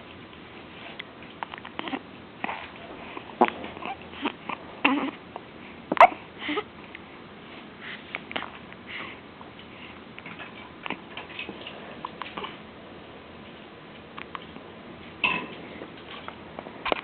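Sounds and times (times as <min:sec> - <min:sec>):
person hiccuping: 0:05.9 - 0:06.2.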